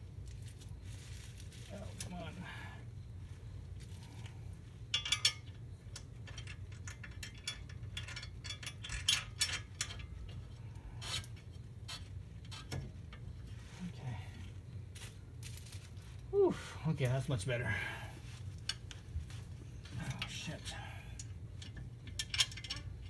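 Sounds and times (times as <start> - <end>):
steady low hum: 0.0 - 23.0
metal tools clinking and scraping: 4.9 - 13.6, 15.4 - 16.1, 18.4 - 23.0.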